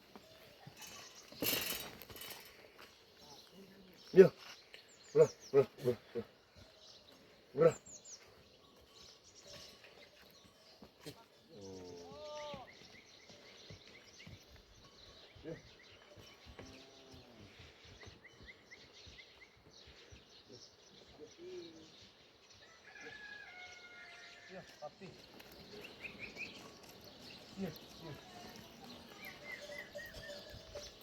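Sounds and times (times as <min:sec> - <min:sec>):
small birds chirping: 0:00.0 - 0:23.0, 0:24.5 - 0:31.0
faint sheep bleating: 0:11.1 - 0:12.9.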